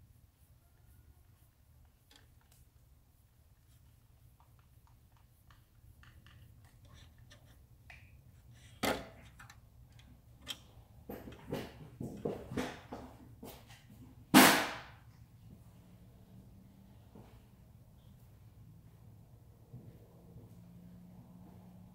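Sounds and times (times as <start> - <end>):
knocks and clatter: 10.4 - 14.9
sharp clack: 14.4 - 15.0.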